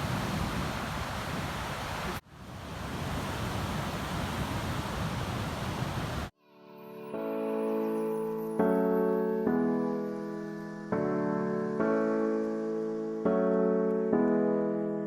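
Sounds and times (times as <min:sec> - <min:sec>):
wind on microphone: 0:00.0 - 0:06.3
ocean surf: 0:00.0 - 0:06.4
soft piano music: 0:06.4 - 0:15.0.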